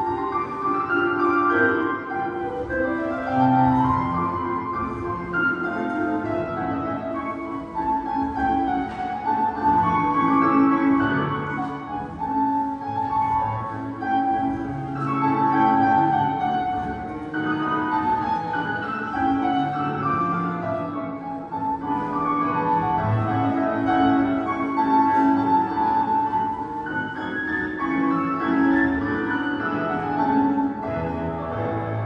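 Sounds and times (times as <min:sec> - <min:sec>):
classical music for ballet: 0:00.0 - 0:32.0.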